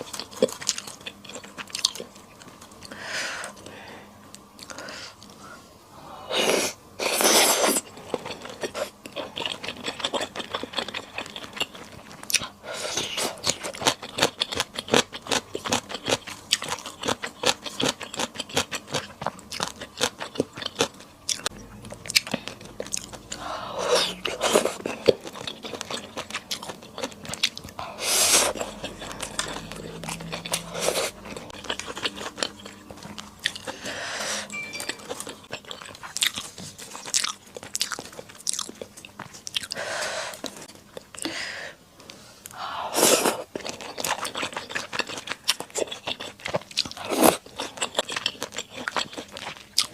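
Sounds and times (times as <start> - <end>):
wet chewing: 7.5 - 34.0, 34.9 - 41.3, 43.3 - 49.9.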